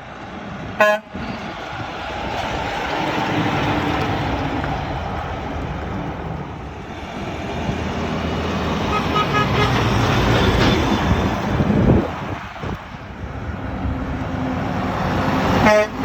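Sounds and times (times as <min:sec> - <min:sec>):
highway traffic: 0:00.0 - 0:16.0.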